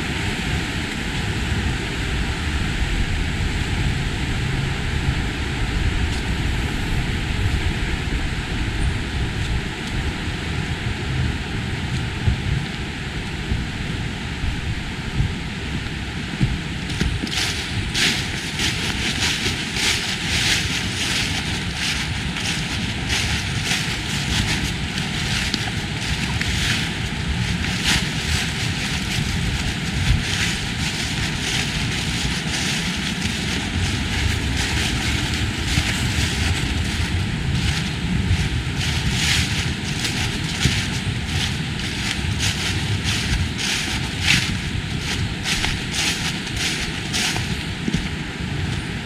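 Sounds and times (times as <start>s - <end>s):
low rumble: 0.0s - 49.0s
rushing background noise: 0.0s - 49.0s
footsteps crunching on leaves: 16.4s - 49.0s.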